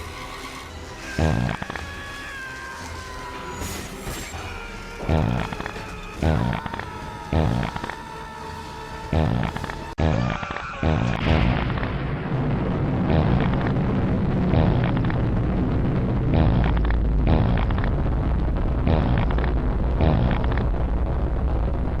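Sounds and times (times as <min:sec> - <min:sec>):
fart sound effect: 0:05.1 - 0:05.6, 0:09.1 - 0:12.2, 0:12.8 - 0:15.4, 0:16.1 - 0:20.9.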